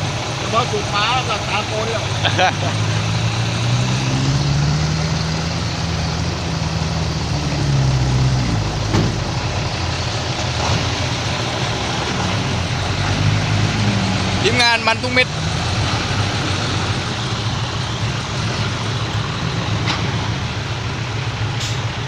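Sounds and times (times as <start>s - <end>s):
truck engine running: 0.0s - 22.0s.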